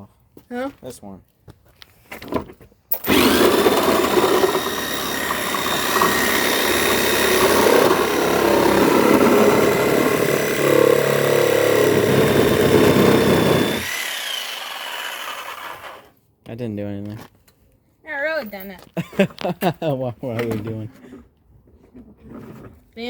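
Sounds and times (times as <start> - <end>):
electric saw cutting plastic: 2.9 - 16.1.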